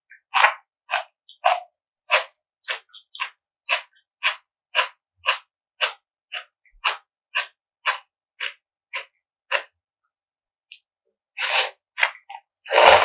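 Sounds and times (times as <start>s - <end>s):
wet bites or slurps: 0.4s - 2.8s, 11.4s - 11.7s, 12.7s - 13.0s
crisp chewing: 0.4s - 6.0s.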